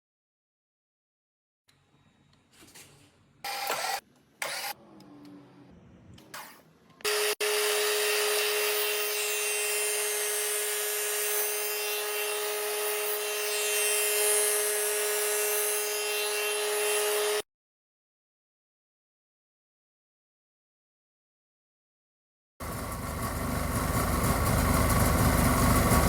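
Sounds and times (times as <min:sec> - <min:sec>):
power tool running: 0:03.5 - 0:04.8, 0:07.0 - 0:17.4, 0:22.6 - 0:26.0.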